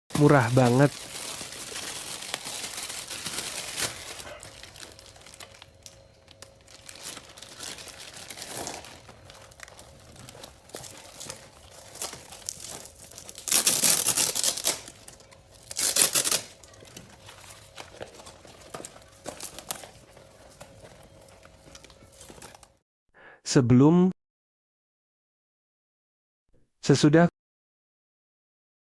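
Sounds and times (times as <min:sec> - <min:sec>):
plastic ripping: 0:00.1 - 0:22.7
plastic packaging crinkling: 0:00.1 - 0:22.8.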